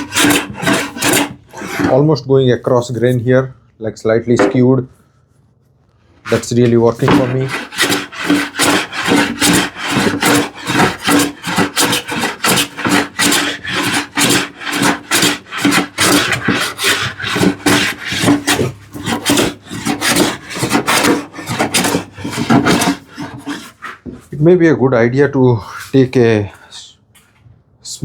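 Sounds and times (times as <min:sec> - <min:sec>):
hand plane rasping on wood: 0:00.0 - 0:02.0, 0:06.3 - 0:24.2.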